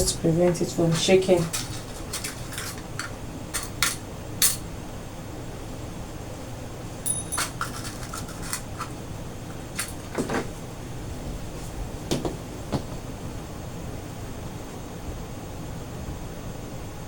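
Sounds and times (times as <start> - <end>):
low steady background hum: 0.0 - 17.0
thin metallic ring: 7.0 - 8.9.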